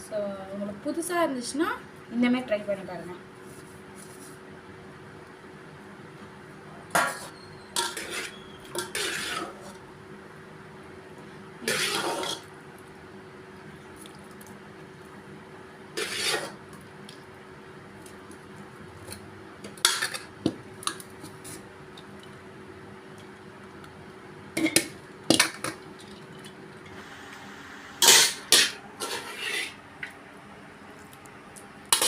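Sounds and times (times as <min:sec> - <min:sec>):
metal spoon scraping a pan: 0:07.0 - 0:09.8, 0:11.6 - 0:12.5, 0:16.0 - 0:16.6, 0:28.0 - 0:29.8
faint steady hum: 0:09.4 - 0:32.0.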